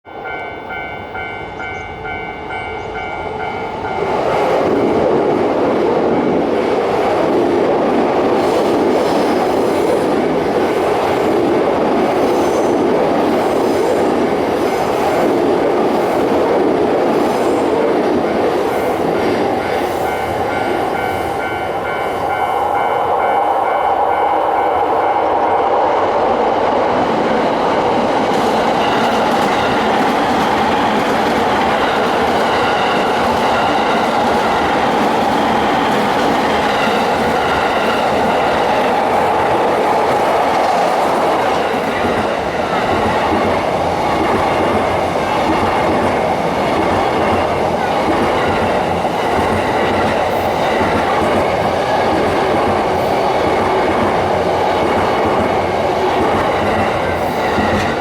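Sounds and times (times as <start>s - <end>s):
train wheels rumbling on rails: 0.0s - 58.0s
clickety-clack over rail joints: 27.5s - 58.0s.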